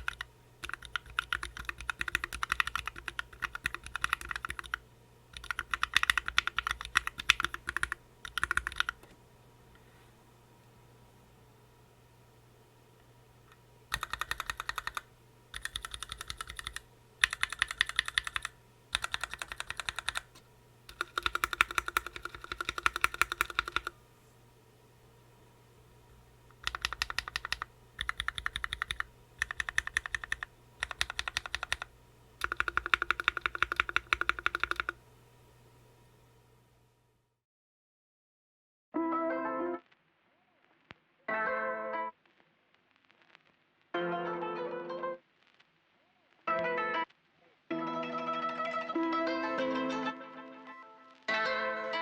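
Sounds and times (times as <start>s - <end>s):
mechanical keyboard typing: 0.0s - 9.1s, 13.9s - 23.9s, 26.5s - 35.0s.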